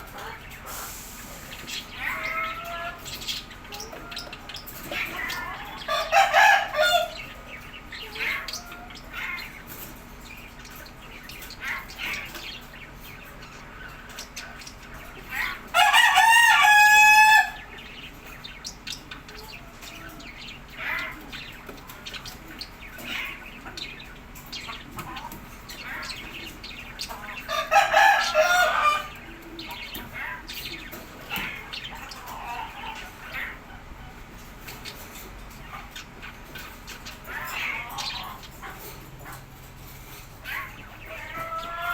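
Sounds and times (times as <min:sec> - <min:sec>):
rooster crowing: 0:05.9 - 0:07.2, 0:15.7 - 0:17.7, 0:27.5 - 0:29.1.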